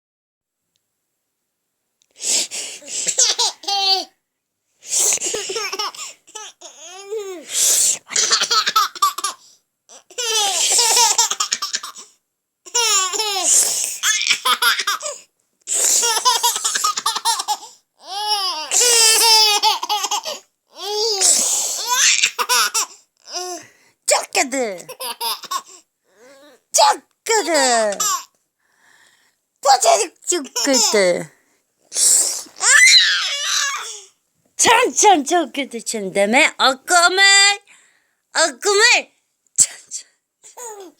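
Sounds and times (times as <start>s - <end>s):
baby laughing: 3.0s - 4.1s, 5.1s - 7.5s, 8.1s - 12.1s, 12.7s - 15.2s, 15.8s - 23.6s, 24.8s - 25.8s, 27.4s - 28.3s, 30.4s - 31.1s, 40.5s - 40.9s.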